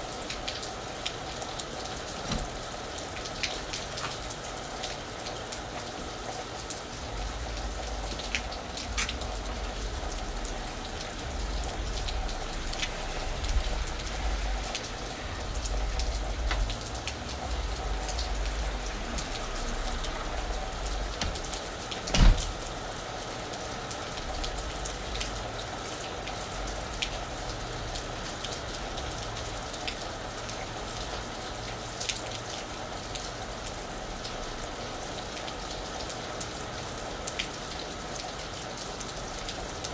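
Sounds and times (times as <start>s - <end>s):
rain falling on a roof: 0.0s - 39.9s
loud thump: 21.2s - 22.6s.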